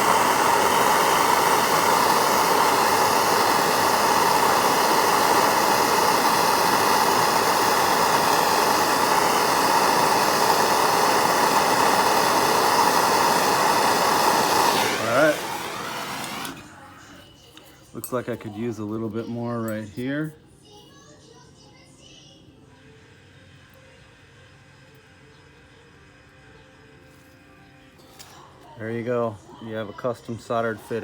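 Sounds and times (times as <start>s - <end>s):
gas torch flame hissing: 0.0s - 17.2s.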